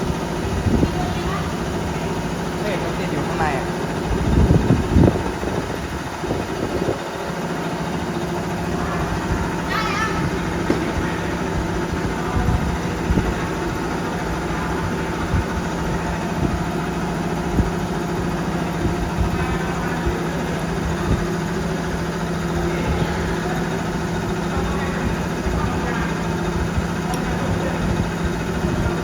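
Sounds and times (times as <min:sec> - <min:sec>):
milling machine humming: 0:00.0 - 0:29.0
short light knocks: 0:10.6 - 0:11.2.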